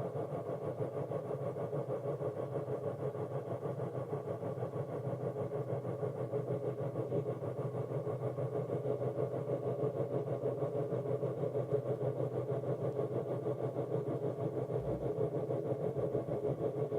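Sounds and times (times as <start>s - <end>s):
fluttering synthesizer drone: 9.6s - 16.9s.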